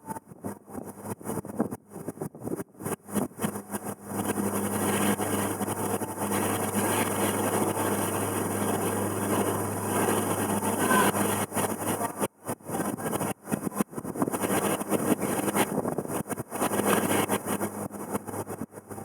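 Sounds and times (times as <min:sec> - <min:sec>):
wind buffeting microphone: 0:00.0 - 0:19.0
water noise: 0:02.9 - 0:13.0
boat engine humming: 0:03.0 - 0:13.8, 0:16.4 - 0:19.0.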